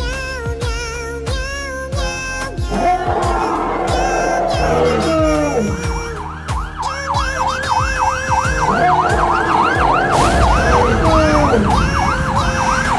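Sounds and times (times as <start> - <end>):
beat with low thumps: 0.0 - 12.9
siren yelping: 2.8 - 12.9.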